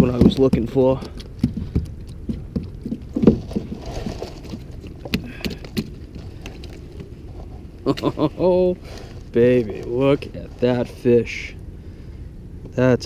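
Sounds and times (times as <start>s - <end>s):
knocks and bumps against kayak hull: 0.0s - 7.1s.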